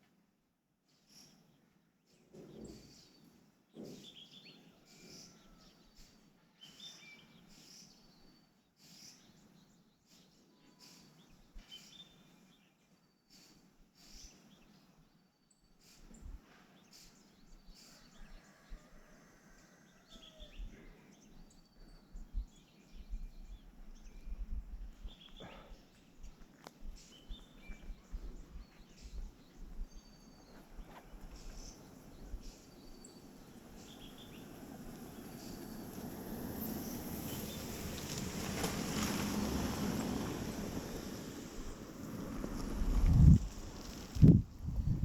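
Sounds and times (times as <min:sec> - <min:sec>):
faint bird chirps: 0:04.0 - 0:34.6.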